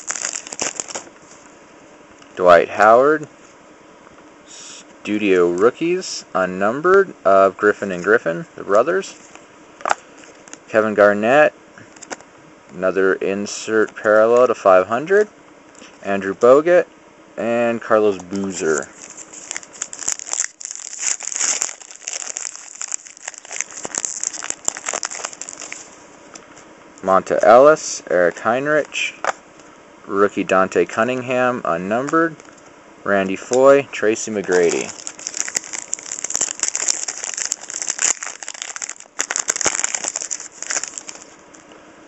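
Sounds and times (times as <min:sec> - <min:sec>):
foil pack crinkling: 0:00.0 - 0:01.4, 0:18.4 - 0:26.6, 0:34.4 - 0:41.6.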